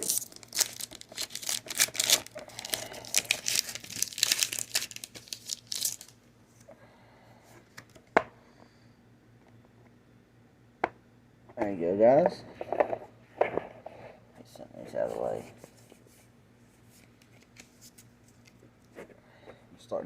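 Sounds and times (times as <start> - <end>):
foil pack tearing and crinkling: 0.0 - 6.2.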